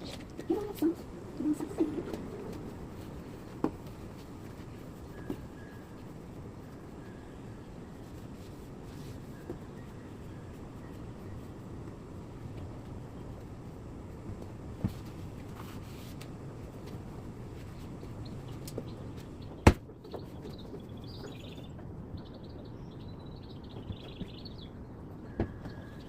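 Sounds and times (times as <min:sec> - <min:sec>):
low background noise: 0:00.0 - 0:26.0
small birds chirping: 0:17.6 - 0:26.0.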